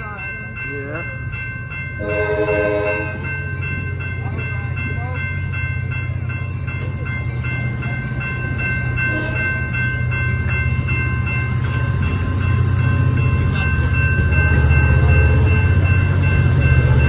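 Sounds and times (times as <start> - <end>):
diesel locomotive rumbling: 0.0 - 17.0
train wheel clicks: 6.6 - 10.8, 11.4 - 17.0.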